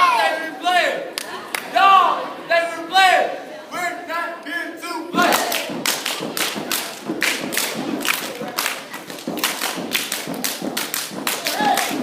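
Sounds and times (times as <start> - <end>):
feet stomping: 5.2 - 12.0
hands clapping and slapping: 5.2 - 12.0.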